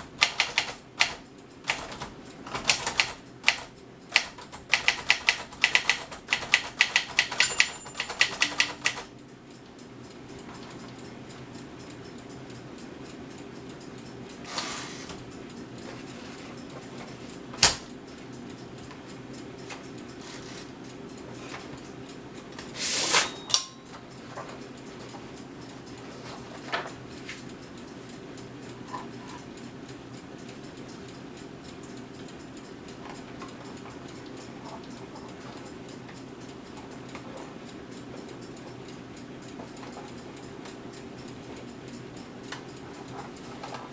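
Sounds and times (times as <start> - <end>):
typewriter clicking: 0.0 - 9.1
typewriter clack: 0.1 - 9.1.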